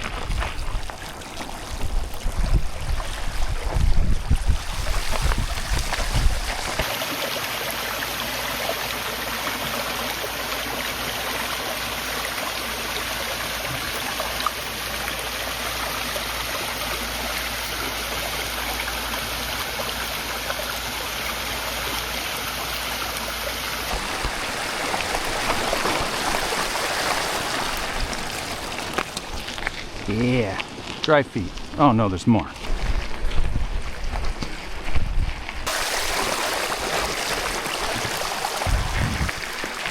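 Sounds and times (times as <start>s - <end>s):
wind buffeting microphone: 0.0s - 6.9s, 32.6s - 36.2s, 37.0s - 39.9s
waterfall rushing: 4.6s - 16.6s, 23.6s - 29.4s, 35.7s - 39.9s.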